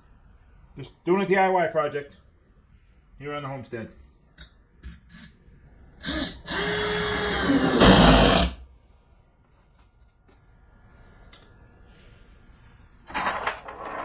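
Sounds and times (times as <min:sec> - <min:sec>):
power drill running: 0:06.0 - 0:08.6.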